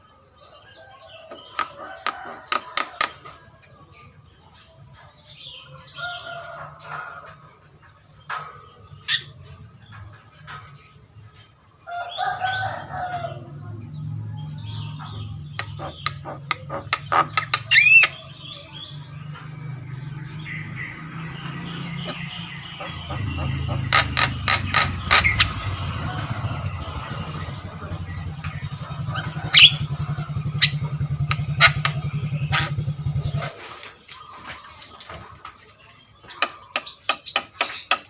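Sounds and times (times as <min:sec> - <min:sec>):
bird clicks and whistles: 0:36.4 - 0:38.0.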